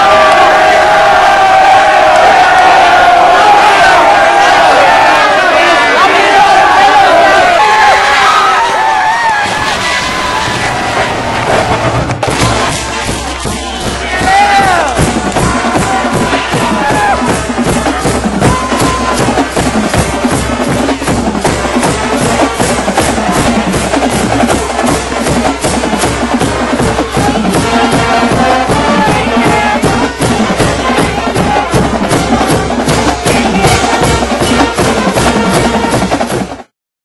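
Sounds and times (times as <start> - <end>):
music with fast percussion beat: 9.4 - 36.7.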